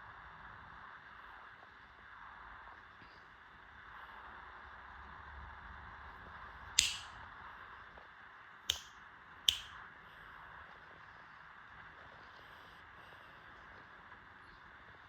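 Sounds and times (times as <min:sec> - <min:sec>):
sharp clicks: 0:06.8 - 0:07.2, 0:08.7 - 0:08.9, 0:09.5 - 0:09.8.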